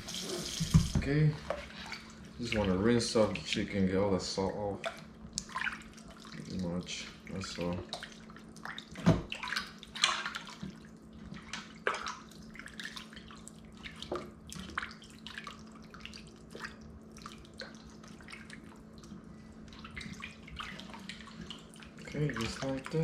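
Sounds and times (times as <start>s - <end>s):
faint steady hum: 0.0s - 23.0s
water splashing and dripping: 4.8s - 6.8s, 7.4s - 23.0s.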